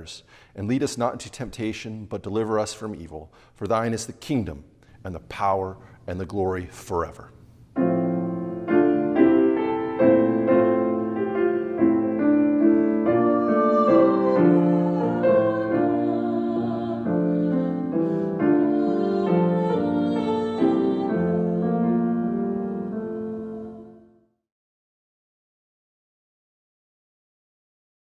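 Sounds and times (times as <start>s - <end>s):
piano playing slow chords: 7.7s - 24.3s.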